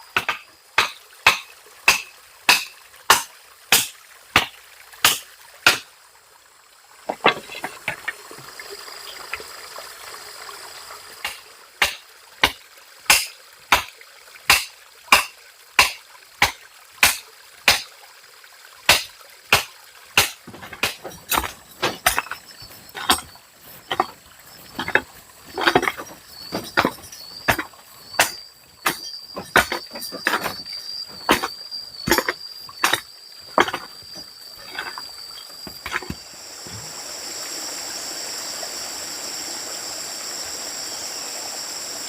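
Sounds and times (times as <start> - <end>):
faint water trickling: 0.0 - 39.8
hand tool striking: 0.2 - 5.8, 14.5 - 17.9, 18.9 - 35.0, 35.7 - 36.2.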